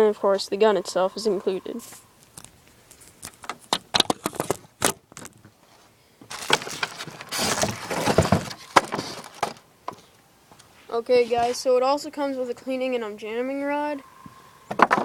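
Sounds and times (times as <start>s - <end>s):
rustling and scraping: 0.6s - 11.8s.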